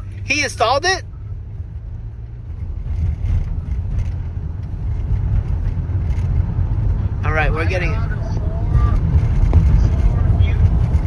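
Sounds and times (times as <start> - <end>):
road and engine rumble in car: 0.0 - 11.0.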